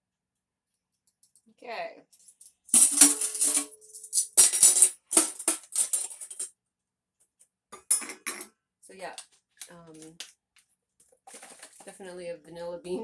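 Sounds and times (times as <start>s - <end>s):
kitchen containers rattling: 2.8s - 6.5s, 7.8s - 8.5s, 11.2s - 12.1s.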